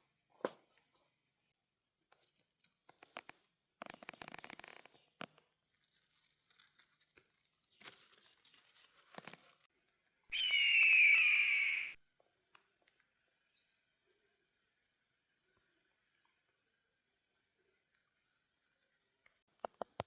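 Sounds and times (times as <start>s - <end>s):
loud call sliding down: 10.3s - 12.0s.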